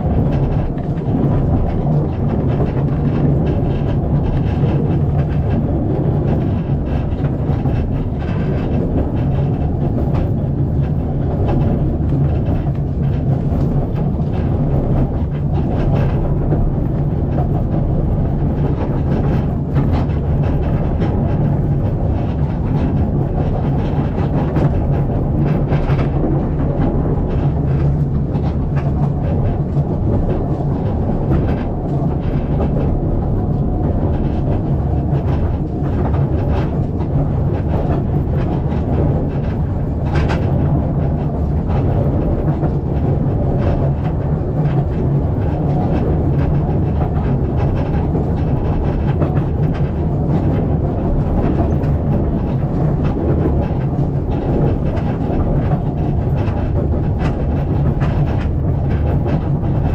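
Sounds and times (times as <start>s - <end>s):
train carriage rumbling: 0.0s - 59.9s.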